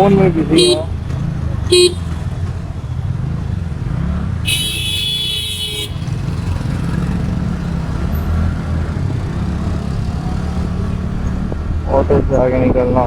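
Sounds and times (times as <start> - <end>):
scooter engine and wind rumble: 0.0 - 13.0
vehicle horn honking: 0.5 - 1.0, 1.7 - 2.2, 4.4 - 6.4.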